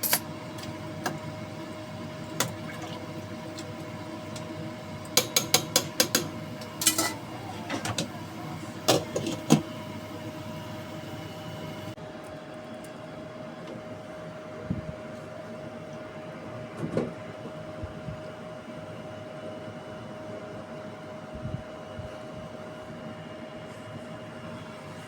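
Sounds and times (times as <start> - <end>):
steady machine hum: 0.0 - 16.4.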